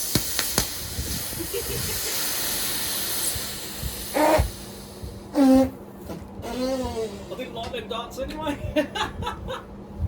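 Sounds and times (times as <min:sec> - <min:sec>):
battery venting hiss: 0:00.0 - 0:05.8.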